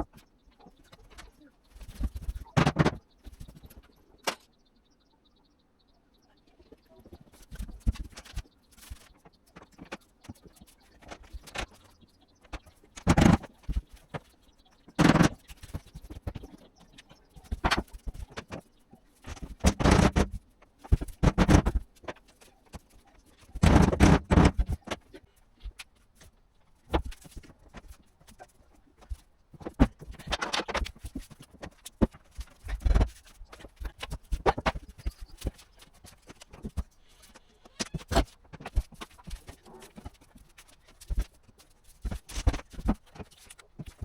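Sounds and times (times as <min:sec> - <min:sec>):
laminate boards knocking and scraping: 0:00.9 - 0:04.4, 0:07.0 - 0:14.3, 0:14.9 - 0:18.7, 0:19.3 - 0:25.1, 0:26.9 - 0:44.0.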